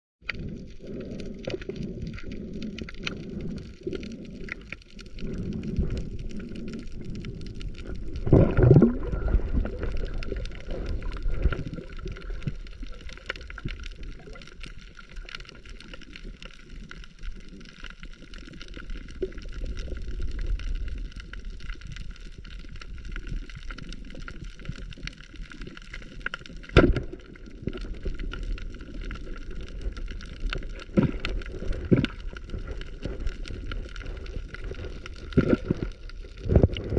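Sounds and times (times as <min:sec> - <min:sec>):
water gurgling and sloshing: 0:00.2 - 0:36.9
low rumble: 0:00.5 - 0:14.3.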